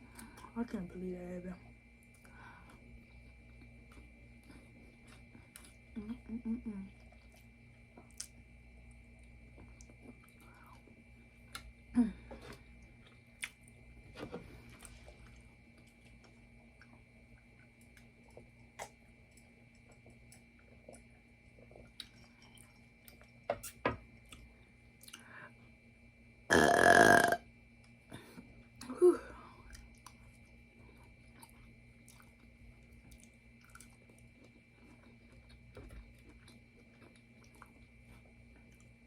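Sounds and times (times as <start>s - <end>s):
quiet eating sounds: 1.6s - 25.8s, 26.5s - 39.0s
loud burp: 26.5s - 27.4s.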